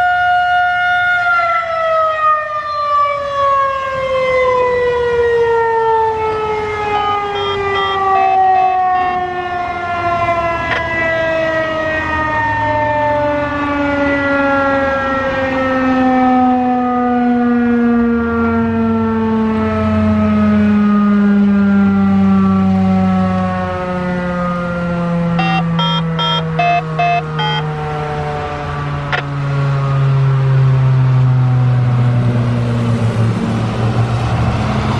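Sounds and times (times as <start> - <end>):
warning siren winding down: 0.0 - 34.9.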